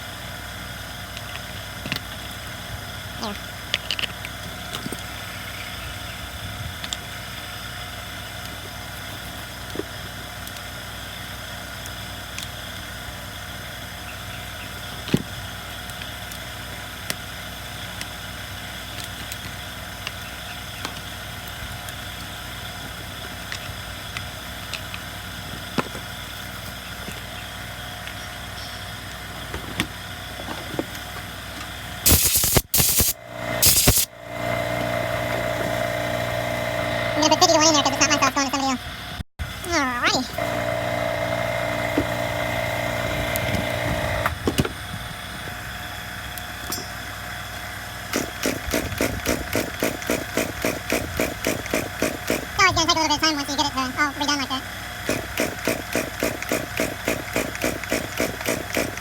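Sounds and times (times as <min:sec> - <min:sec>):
steady mechanical hum: 0:00.0 - 0:59.0
loud bursts of noise: 0:32.1 - 0:38.4.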